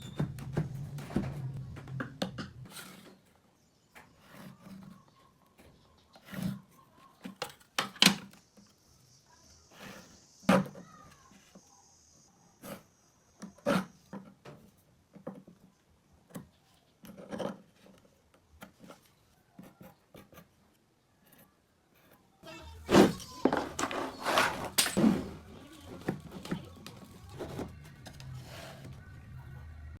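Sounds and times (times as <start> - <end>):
wood rubbing: 22.5 - 29.0.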